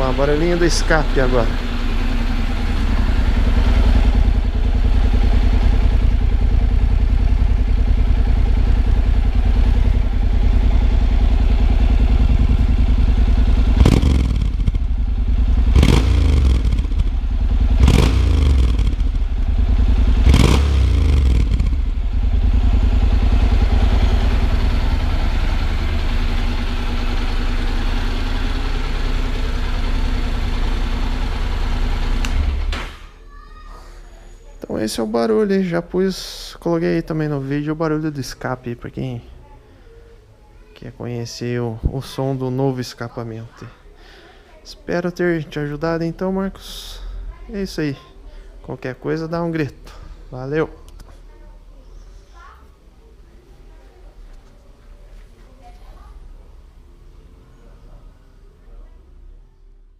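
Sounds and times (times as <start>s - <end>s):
motorcycle throttle blips: 0.0s - 32.9s
motorcycle idling: 0.0s - 33.1s, 34.1s - 59.9s.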